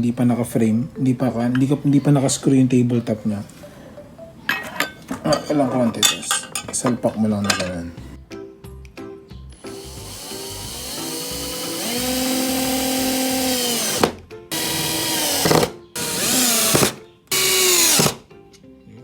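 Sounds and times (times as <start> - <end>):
electric drill driving screws: 9.6 - 18.2.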